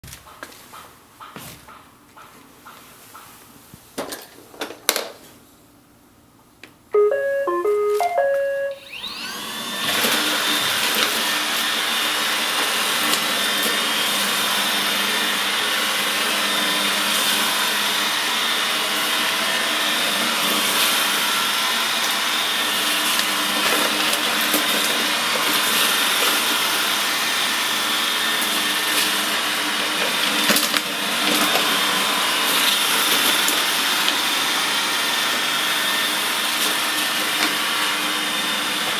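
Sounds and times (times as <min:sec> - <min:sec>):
tune of stepped beeps: 0:07.0 - 0:09.0.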